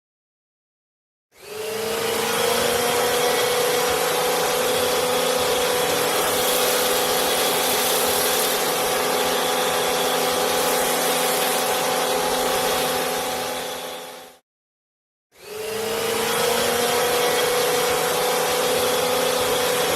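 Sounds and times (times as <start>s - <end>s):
pump humming: 1.4s - 14.4s, 15.4s - 19.9s
pressure washer spraying: 2.2s - 14.3s, 16.3s - 19.9s.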